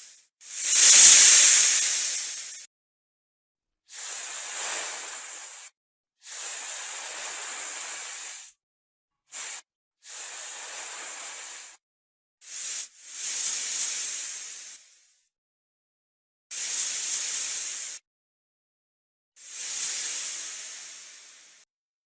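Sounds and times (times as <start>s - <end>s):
snake hissing: 0.0s - 2.7s, 3.9s - 5.7s, 6.3s - 8.5s, 9.3s - 11.8s, 12.4s - 15.0s, 16.6s - 18.0s, 19.4s - 21.7s.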